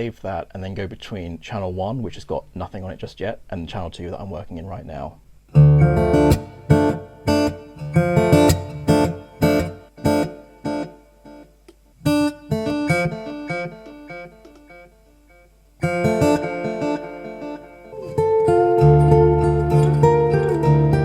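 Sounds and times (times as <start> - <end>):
acoustic guitar strumming and picking: 5.5 - 21.0.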